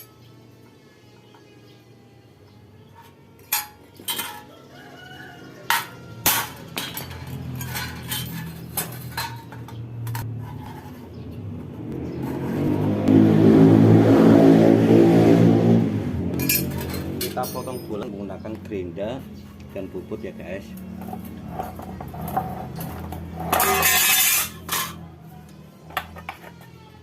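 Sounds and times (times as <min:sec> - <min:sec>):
metal parts clinking: 0:03.4 - 0:04.6, 0:05.7 - 0:11.0, 0:16.4 - 0:18.1, 0:21.0 - 0:25.1.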